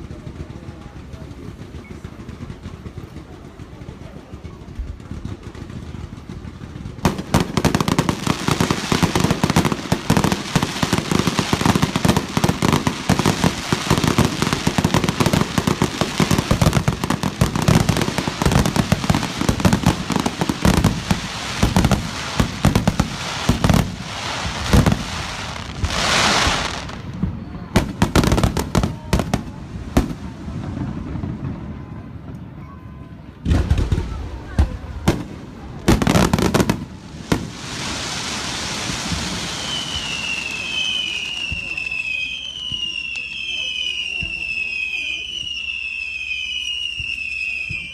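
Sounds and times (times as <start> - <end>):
fireworks bangs and crackle: 0.0 - 47.9
firework hiss: 7.1 - 27.2, 35.6 - 46.8.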